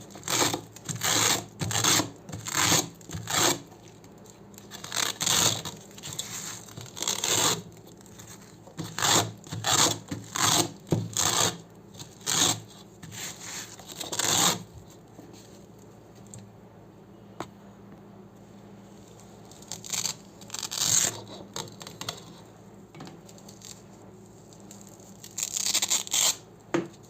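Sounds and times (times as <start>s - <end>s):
velcro tearing: 0.1s - 4.0s, 4.6s - 14.7s, 19.5s - 22.2s, 24.6s - 26.4s.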